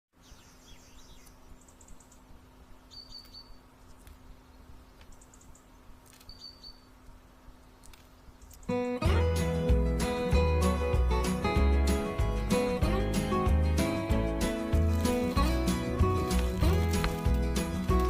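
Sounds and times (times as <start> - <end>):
bird chirps and trills: 0.2 - 9.0
soft clicks: 7.8 - 8.7.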